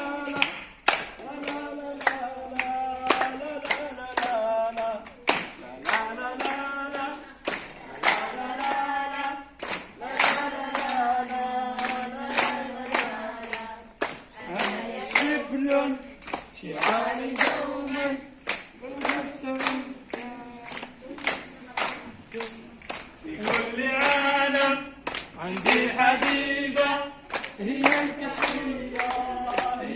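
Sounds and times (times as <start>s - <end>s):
group singing in unison: 0.0s - 29.9s
people clapping along: 0.0s - 29.9s.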